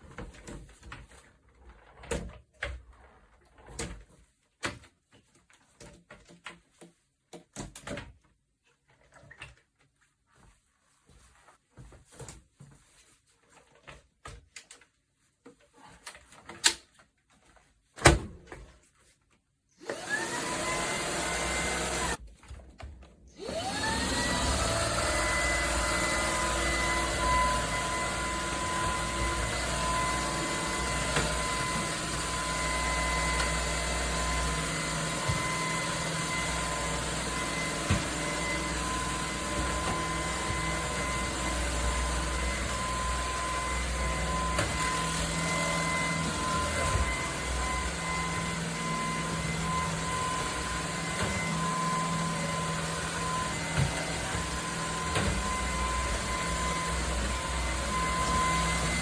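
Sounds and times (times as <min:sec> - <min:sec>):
vacuum cleaner motor whine: 0:19.8 - 0:22.2, 0:23.2 - 0:59.0.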